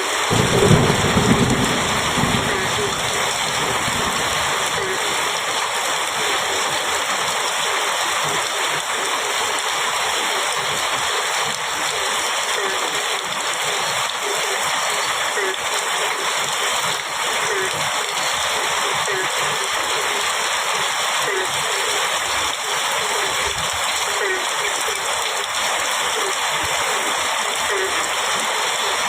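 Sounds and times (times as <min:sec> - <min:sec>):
heavy rain on a metal roof: 0:00.0 - 0:29.0
thunder rumble: 0:00.3 - 0:04.9.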